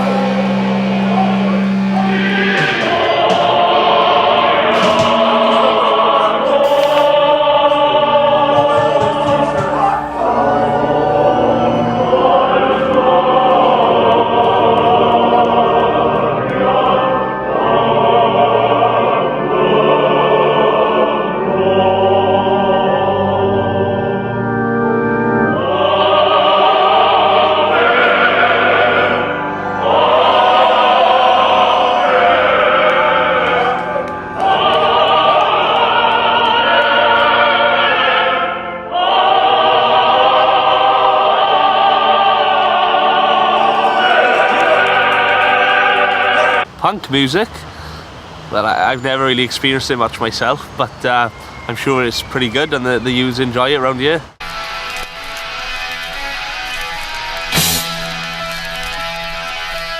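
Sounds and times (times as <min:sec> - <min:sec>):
choir singing: 0:00.0 - 0:46.8.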